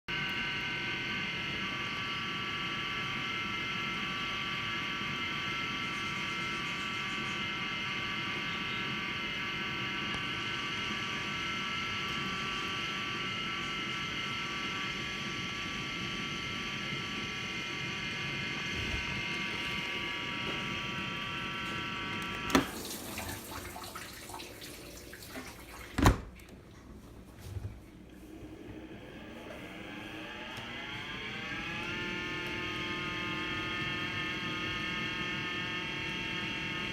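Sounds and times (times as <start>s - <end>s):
dishwasher water spray: 22.6s - 26.3s.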